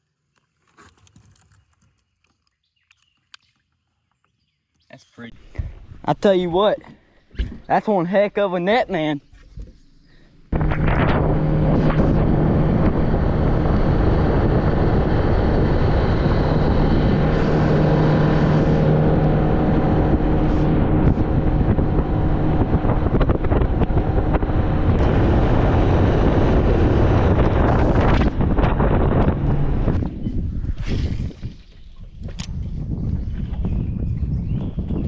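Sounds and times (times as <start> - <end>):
motorboat engine droning: 9.6 - 30.2
wind buffeting microphone: 10.5 - 35.0.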